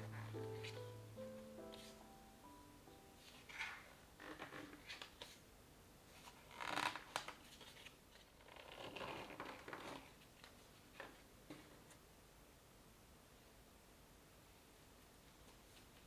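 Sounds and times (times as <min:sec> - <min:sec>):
crinkling and rustling: 0:03.2 - 0:05.4, 0:06.1 - 0:12.0.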